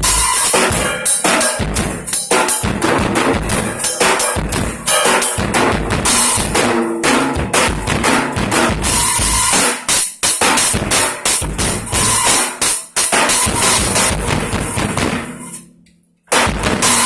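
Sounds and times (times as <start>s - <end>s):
cymbals crashing: 0.0s - 15.6s, 16.4s - 17.0s
snare and tom strikes: 0.0s - 15.6s, 16.3s - 17.0s
bass drum kicks: 1.6s - 3.8s, 4.4s - 9.5s, 10.7s - 12.2s, 13.5s - 15.3s, 16.4s - 17.0s.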